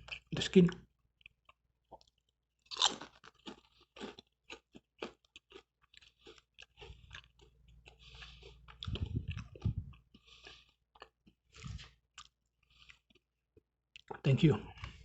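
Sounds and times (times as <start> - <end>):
person crunching fried pastry: 1.2 - 13.3
crisp chewing crunches: 2.0 - 13.2.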